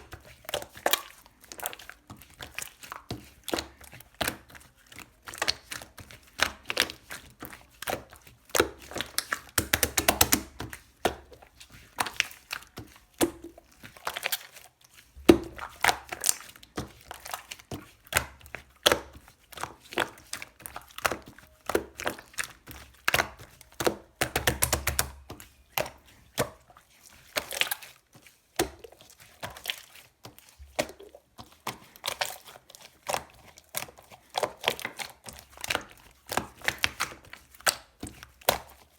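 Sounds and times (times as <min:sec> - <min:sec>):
slime squishing with clicks and pops: 0:00.0 - 0:14.6, 0:15.2 - 0:26.7, 0:33.0 - 0:38.8.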